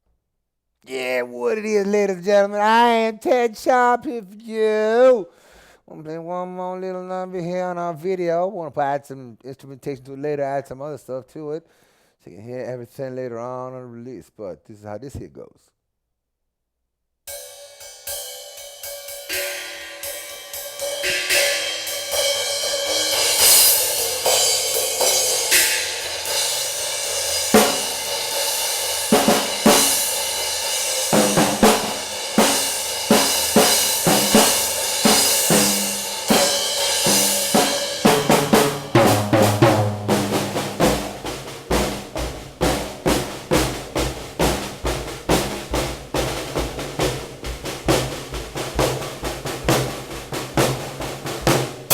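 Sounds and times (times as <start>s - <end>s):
cymbals washing: 18.4s - 39.8s
snare and bass drum beat: 20.8s - 51.9s.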